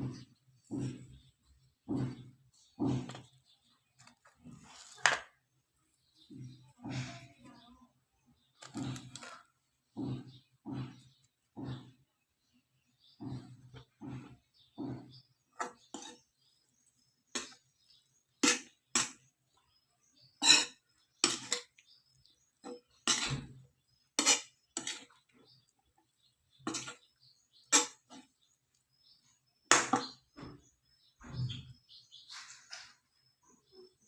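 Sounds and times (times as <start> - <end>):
metal utensil scraping cookware: 13.2 - 16.5, 17.3 - 17.7, 18.4 - 19.3, 20.1 - 25.7, 26.6 - 28.4.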